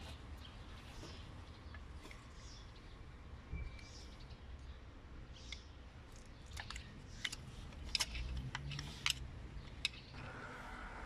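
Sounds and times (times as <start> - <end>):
small parts clicking: 5.5 - 10.2.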